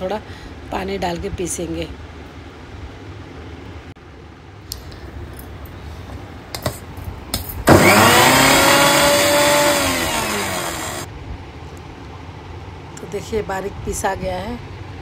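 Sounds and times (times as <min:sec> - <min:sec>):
mixer grinder motor whine: 0:07.7 - 0:11.1.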